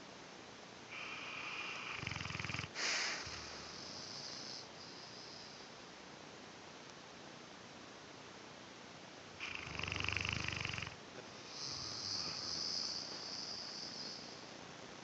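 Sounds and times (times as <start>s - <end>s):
dog snoring: 0.9s - 5.7s, 9.4s - 14.4s.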